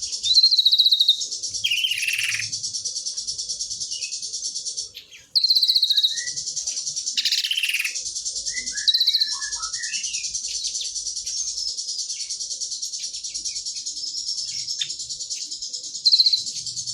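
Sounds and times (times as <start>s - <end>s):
low bird chirps and whistles: 0.0s - 2.6s, 5.0s - 16.9s
descending rattling bird phrases: 0.0s - 16.9s
songbird high trill: 0.0s - 16.9s.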